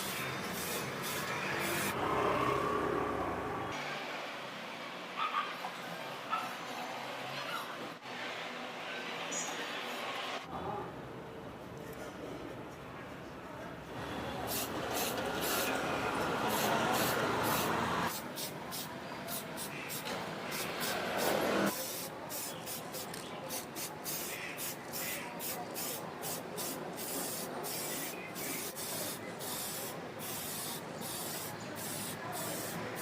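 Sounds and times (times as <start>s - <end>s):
spray paint hissing: 0.0s - 2.0s, 14.5s - 15.7s, 16.4s - 33.0s.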